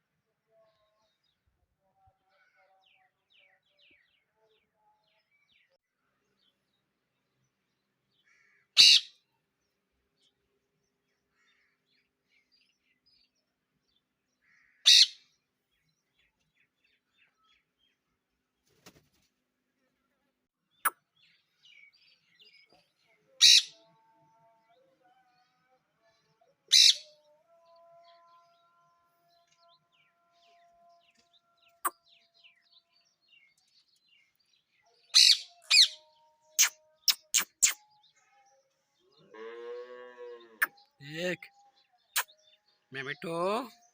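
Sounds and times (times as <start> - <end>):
parrot screeching: 8.8 - 9.1, 14.9 - 15.2, 23.4 - 23.7, 26.7 - 27.1, 35.2 - 36.0.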